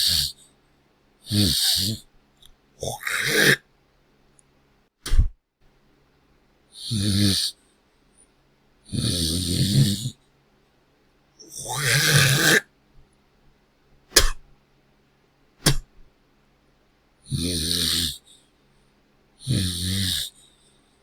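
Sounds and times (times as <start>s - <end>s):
person snorting: 0.0s - 0.4s, 1.3s - 2.0s, 5.1s - 5.3s, 8.9s - 10.2s, 11.6s - 12.7s, 14.2s - 14.4s, 15.6s - 15.9s, 19.4s - 20.4s
person spitting: 5.1s - 5.3s, 11.7s - 12.6s, 14.2s - 14.5s, 15.6s - 15.9s
person hawking up phlegm: 14.2s - 14.4s, 15.6s - 15.9s.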